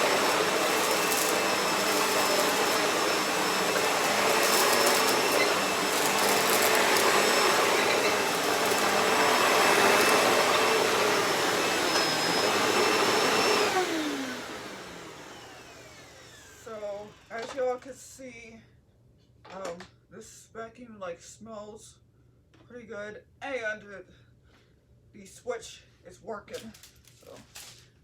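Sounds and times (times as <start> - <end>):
vacuum cleaner whining: 0.0 - 17.6.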